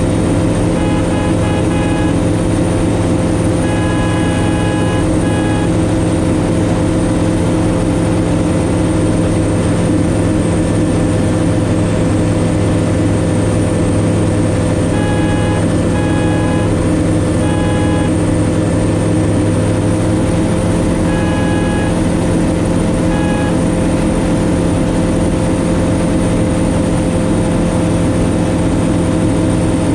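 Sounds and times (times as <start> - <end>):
light aircraft engine drone: 0.0 - 29.9
electronic beeps: 0.7 - 2.3, 3.6 - 5.8, 14.9 - 18.2, 21.0 - 22.2, 23.0 - 23.7.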